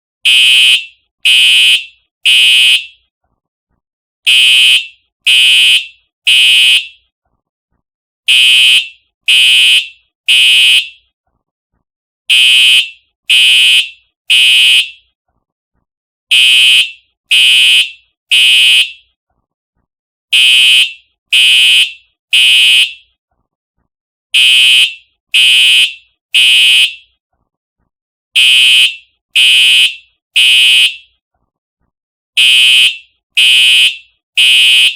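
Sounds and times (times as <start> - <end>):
fire alarm horn blasts: 0.2 - 3.0, 4.3 - 7.0, 8.3 - 11.1, 12.3 - 15.1, 16.3 - 19.0, 20.3 - 23.1, 24.4 - 27.1, 28.4 - 31.2, 32.4 - 34.9.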